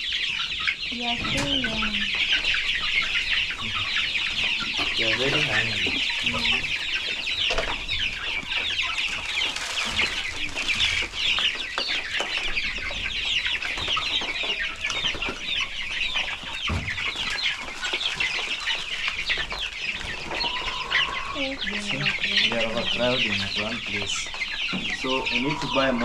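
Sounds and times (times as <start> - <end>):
chicks peeping: 0.0 - 26.0.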